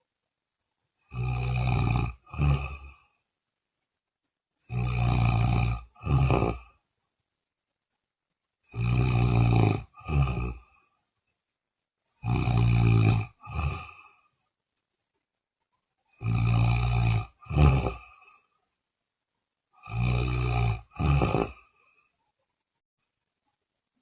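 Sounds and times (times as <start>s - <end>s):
person snoring loudly: 1.0s - 3.1s, 4.7s - 6.8s, 8.7s - 10.8s, 12.2s - 14.2s, 16.1s - 18.4s, 19.8s - 21.8s.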